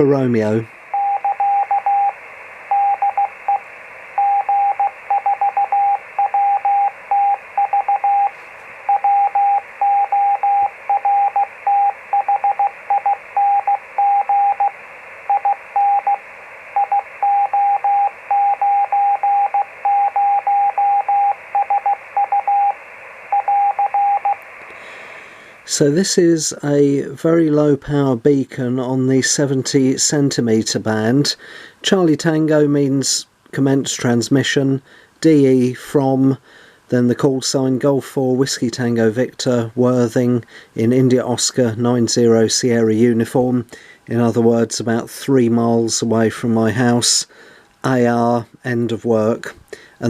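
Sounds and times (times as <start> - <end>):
receiver hiss: 0.0 - 50.0
morse code tone: 0.9 - 16.2, 16.8 - 24.4.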